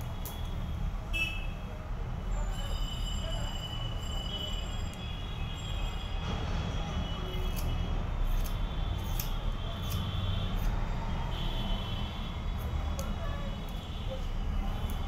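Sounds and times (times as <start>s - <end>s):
scissors snipping hair: 0.0s - 0.5s, 7.4s - 10.9s, 12.5s - 15.0s.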